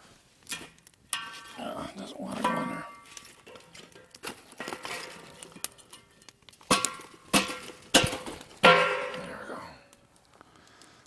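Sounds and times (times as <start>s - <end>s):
wood scraping against metal tub: 1.2s - 9.4s.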